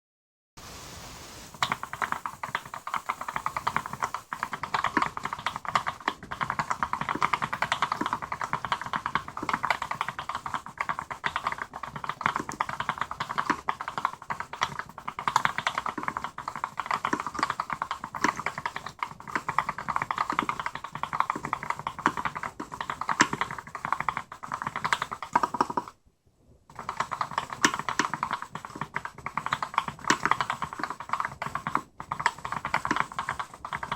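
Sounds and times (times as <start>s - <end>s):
mechanical keyboard typing: 1.6s - 26.0s, 26.7s - 33.9s.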